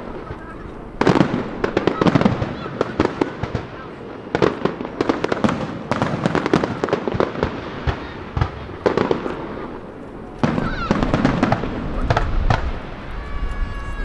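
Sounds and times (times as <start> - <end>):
fireworks booms and crackling: 0.0 - 14.0.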